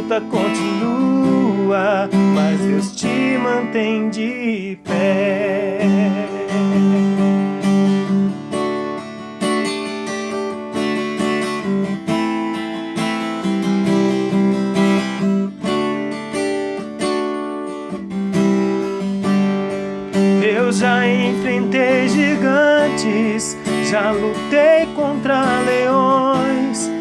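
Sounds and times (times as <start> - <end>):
acoustic guitar strumming: 0.0 - 27.0.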